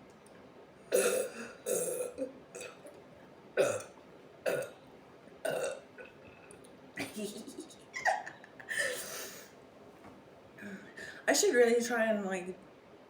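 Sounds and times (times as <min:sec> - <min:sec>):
woman burping: 0:00.9 - 0:02.9, 0:03.6 - 0:04.7, 0:05.4 - 0:06.2.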